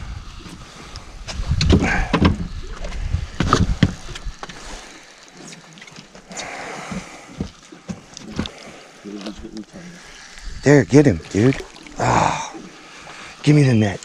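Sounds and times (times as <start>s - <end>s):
knocks and clatter in a boat: 1.3s - 4.6s, 5.4s - 9.4s.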